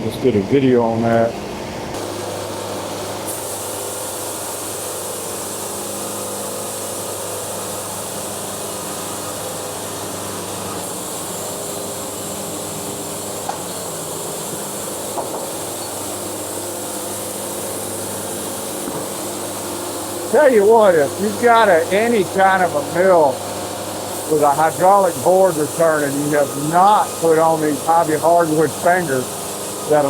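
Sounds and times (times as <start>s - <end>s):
band saw blade sawing log: 10.1s - 30.0s.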